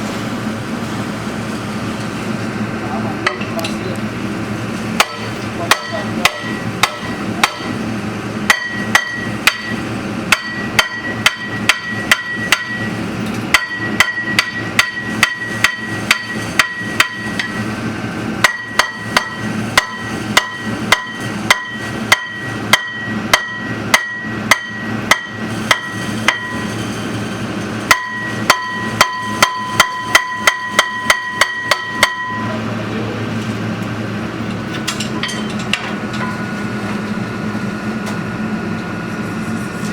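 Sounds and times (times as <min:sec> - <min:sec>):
hammer striking metal: 0:05.0 - 0:07.8, 0:08.5 - 0:17.7, 0:18.4 - 0:26.8, 0:27.9 - 0:32.6.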